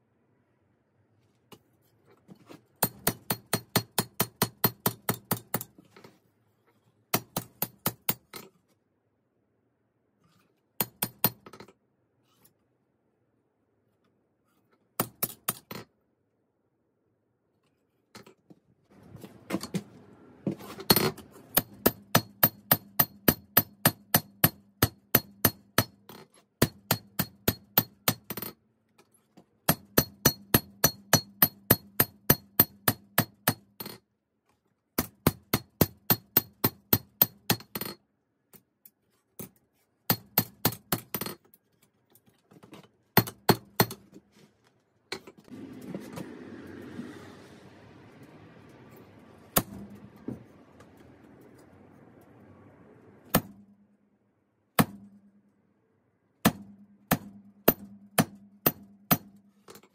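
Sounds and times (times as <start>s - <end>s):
hammer striking steel on anvil: 2.8s - 5.6s, 29.7s - 33.7s.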